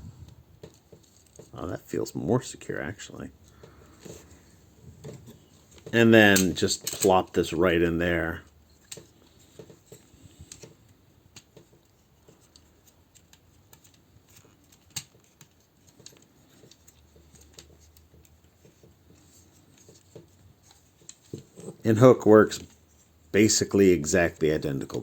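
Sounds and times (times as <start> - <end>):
plastic toy parts clicking: 5.0 - 7.1, 8.7 - 21.8.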